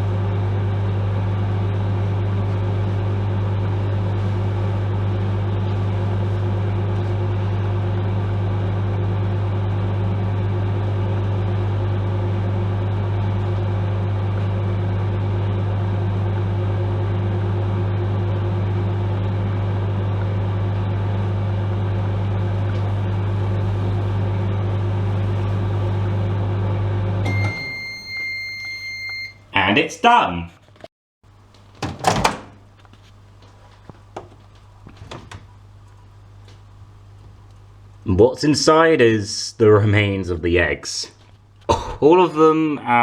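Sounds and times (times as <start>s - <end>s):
microwave oven humming: 0.0s - 29.8s, 31.3s - 38.9s
microwave high beep: 22.9s - 26.4s, 27.2s - 29.5s.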